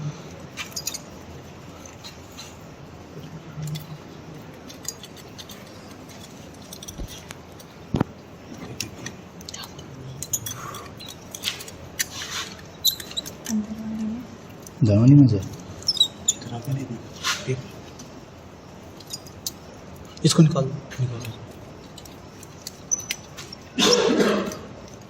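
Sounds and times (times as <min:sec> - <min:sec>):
surgical instruments clicking: 0:03.2 - 0:14.8, 0:18.8 - 0:20.4, 0:21.2 - 0:25.0.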